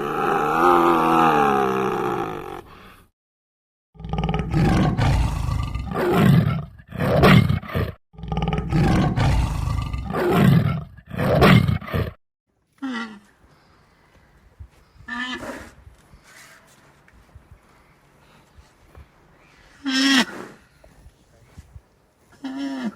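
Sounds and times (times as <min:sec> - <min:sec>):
tiger roaring: 0:04.0 - 0:12.2.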